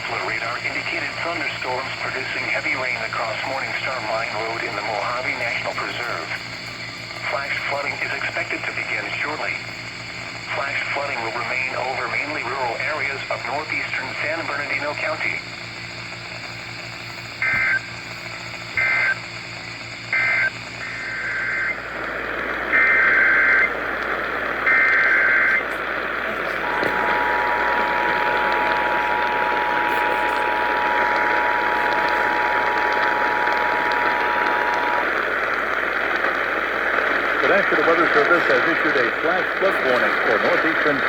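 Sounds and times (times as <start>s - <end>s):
radio static hiss: 0.0s - 41.0s
warbling digital data bursts: 0.0s - 41.0s
two-tone attention signal: 26.6s - 35.0s.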